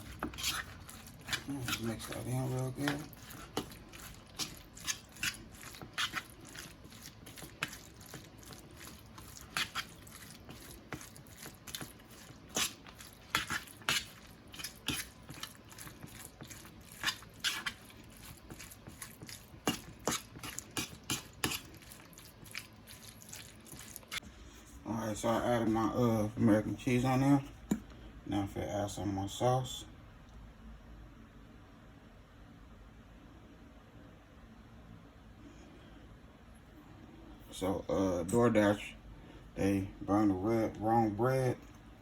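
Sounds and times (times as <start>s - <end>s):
utensil scraping a bowl: 0.0s - 24.2s.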